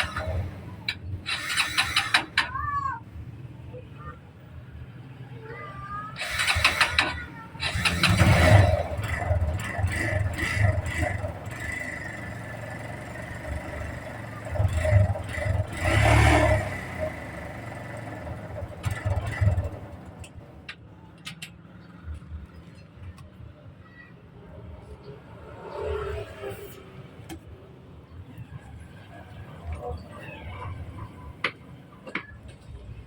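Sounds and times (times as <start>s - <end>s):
engine revving: 6.2s - 20.4s.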